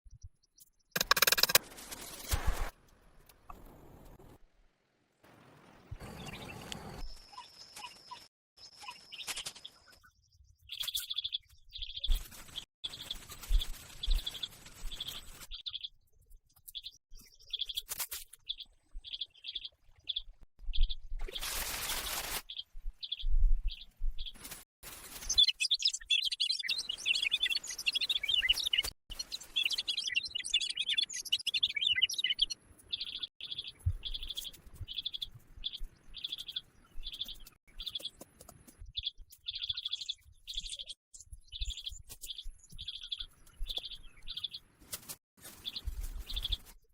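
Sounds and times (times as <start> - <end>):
birds chirping: 5.5 - 16.0, 25.3 - 44.8.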